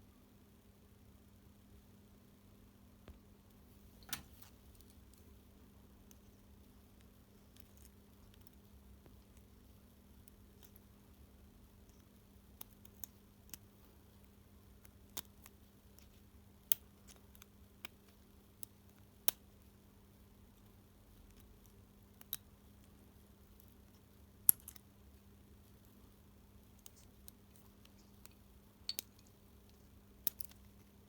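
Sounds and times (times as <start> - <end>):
faint steady hum: 0.0 - 31.0
clicks of small parts handled: 26.8 - 30.6.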